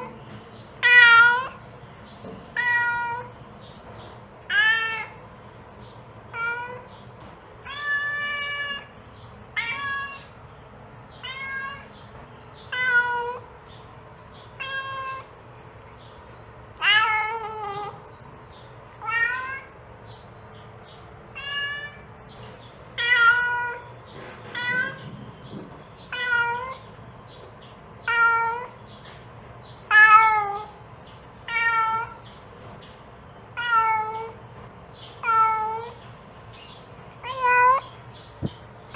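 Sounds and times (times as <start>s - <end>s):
cat meowing: 0.8s - 1.6s, 2.5s - 3.4s, 4.5s - 5.2s, 6.3s - 7.0s, 7.6s - 10.4s, 11.2s - 12.0s, 12.7s - 13.5s, 14.5s - 15.3s, 16.8s - 18.1s, 19.0s - 19.8s, 21.3s - 22.1s, 23.0s - 25.1s, 26.1s - 26.9s, 28.0s - 28.8s, 29.9s - 30.8s, 31.4s - 32.2s, 33.5s - 34.4s, 35.2s - 36.0s, 37.2s - 37.9s.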